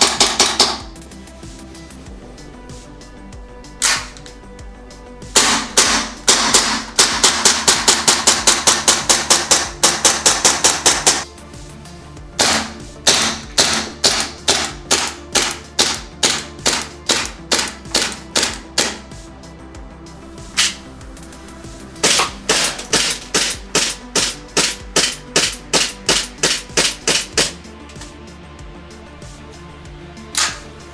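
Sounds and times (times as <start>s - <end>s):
airsoft gun shots: 0.0s - 0.9s, 3.8s - 4.2s, 5.4s - 11.3s, 12.4s - 19.0s, 20.5s - 20.8s, 22.0s - 27.6s, 30.4s - 30.6s
background music: 0.0s - 30.9s.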